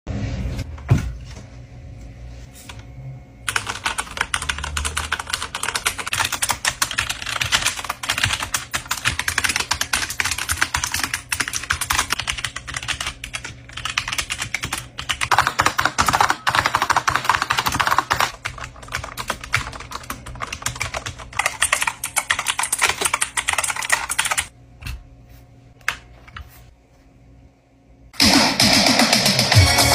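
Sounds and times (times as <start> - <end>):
fast typing on keyboard: 3.5 - 24.5.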